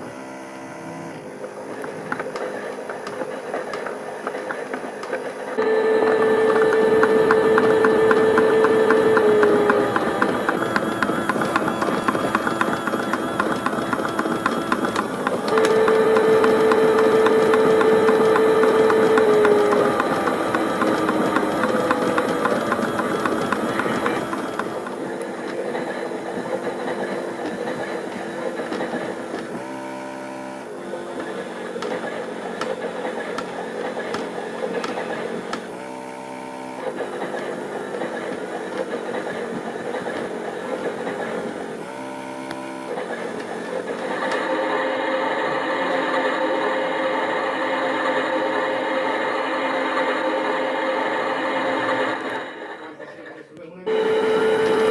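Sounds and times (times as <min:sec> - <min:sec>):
toy washing machine motor whine: 0:00.0 - 0:53.1, 0:53.9 - 0:54.9.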